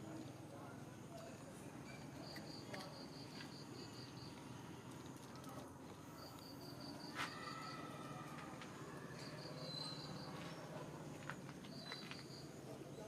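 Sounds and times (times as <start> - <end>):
faint background noise: 0.0 - 13.0
insect chirping: 1.2 - 5.2, 6.0 - 10.8, 11.6 - 13.0.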